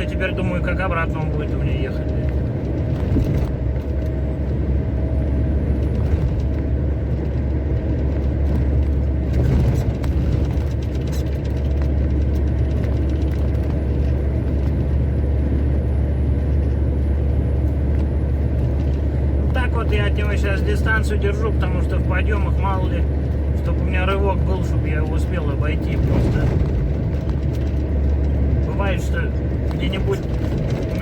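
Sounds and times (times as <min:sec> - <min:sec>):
road noise: 0:00.0 - 0:31.0
truck diesel engine drone: 0:00.0 - 0:31.0.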